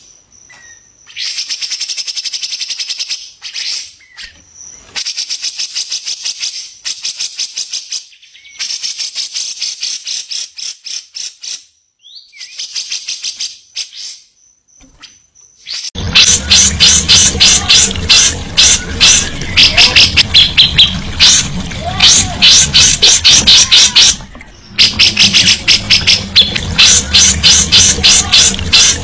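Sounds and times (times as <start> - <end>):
songbird rattling trills: 15.6 - 29.0.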